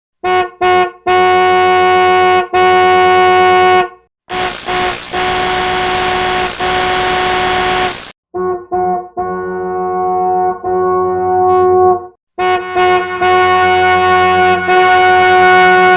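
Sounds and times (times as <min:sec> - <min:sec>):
distortion hiss: 0:04.3 - 0:08.2.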